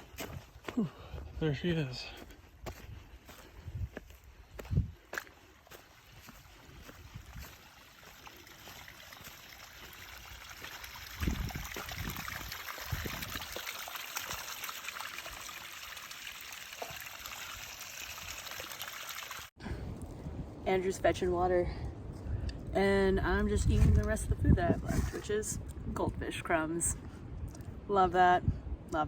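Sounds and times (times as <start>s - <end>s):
spring water trickling: 5.5s - 19.6s.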